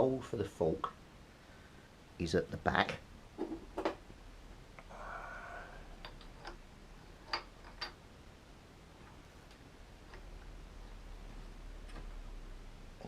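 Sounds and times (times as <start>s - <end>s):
small metal parts clicking: 7.2s - 8.0s.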